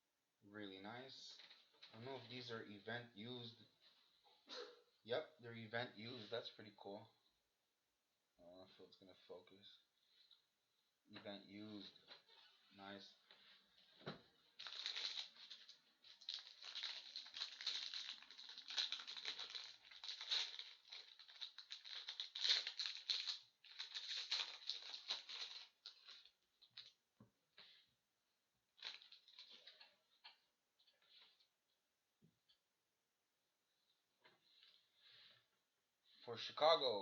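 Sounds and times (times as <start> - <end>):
plastic packaging crinkling: 14.5 - 27.0, 28.8 - 29.9.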